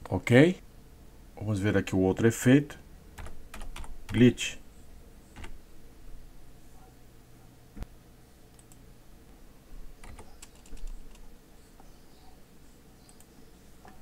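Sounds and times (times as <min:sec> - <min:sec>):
keyboard typing: 0:03.2 - 0:04.2, 0:05.3 - 0:05.6, 0:10.0 - 0:11.3
mouse clicks: 0:08.5 - 0:08.8, 0:13.0 - 0:14.0.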